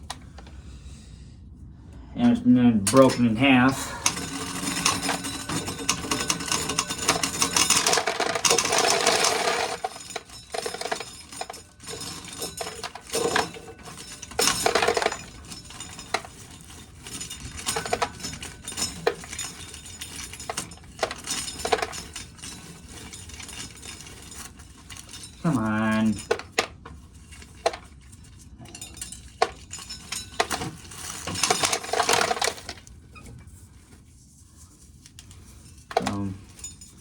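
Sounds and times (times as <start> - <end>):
corn kernels rattling into container: 4.0 - 26.7, 30.4 - 32.9.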